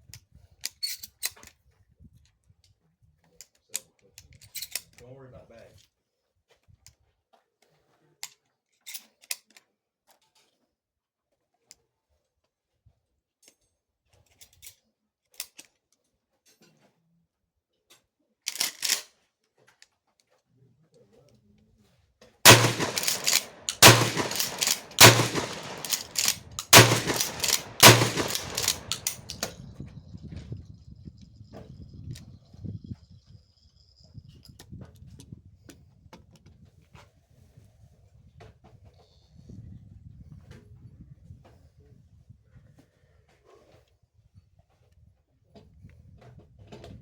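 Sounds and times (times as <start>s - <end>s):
shotgun handling clicks: 18.5s - 19.0s, 22.5s - 29.6s
shotgun pump being worked: 18.5s - 19.0s, 22.5s - 29.6s
loud shotgun shots: 22.5s - 29.6s.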